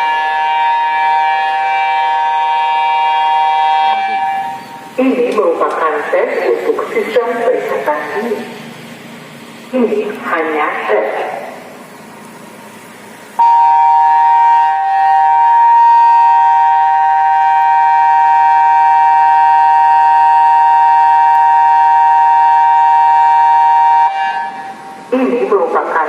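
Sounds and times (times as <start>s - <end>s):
two-pitch warning siren: 0.0s - 4.9s, 13.4s - 25.0s.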